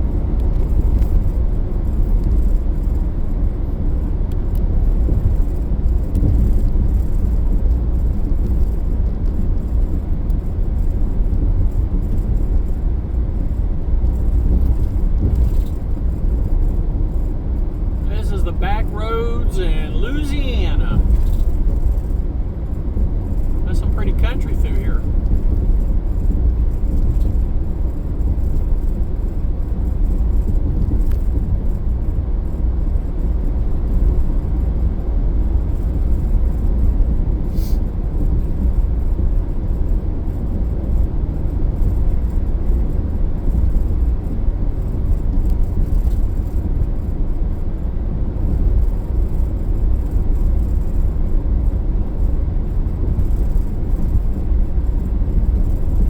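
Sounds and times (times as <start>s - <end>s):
car tyres and engine rumble: 0.0s - 56.0s.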